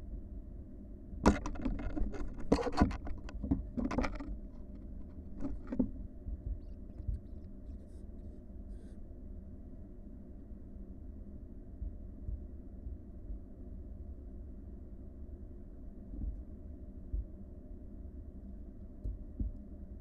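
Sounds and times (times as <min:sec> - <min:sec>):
steady low hum: 0:00.0 - 0:20.0
owl nestlings scrabbling and knocking: 0:01.3 - 0:07.5.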